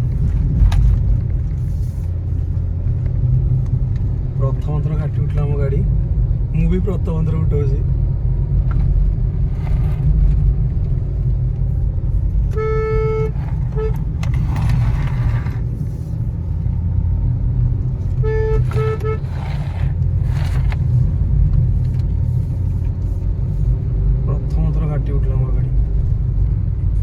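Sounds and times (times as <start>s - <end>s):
car engine rumble: 0.0s - 27.0s
car horn toots: 12.4s - 15.5s, 18.1s - 20.0s.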